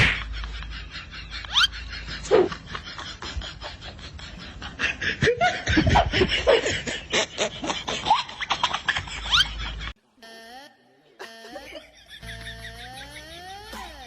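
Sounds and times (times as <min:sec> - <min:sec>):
person snickering: 0:11.2 - 0:14.0.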